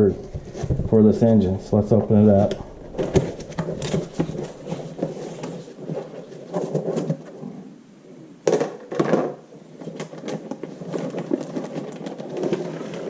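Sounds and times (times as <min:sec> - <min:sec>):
cardboard box scraping and rustling: 0:02.8 - 0:07.3.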